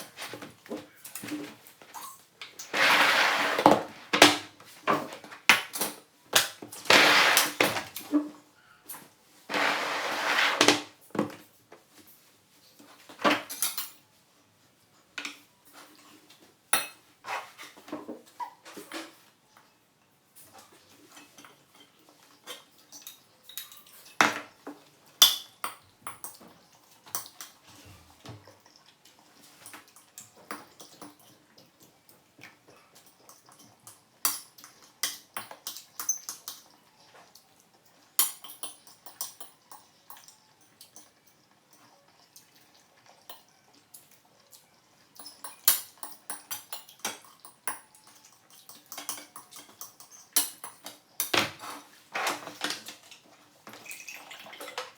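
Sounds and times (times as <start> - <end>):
utensils clinking against dishes: 21.0 - 26.5, 29.5 - 31.5, 32.8 - 36.8, 37.8 - 44.1, 45.2 - 54.5.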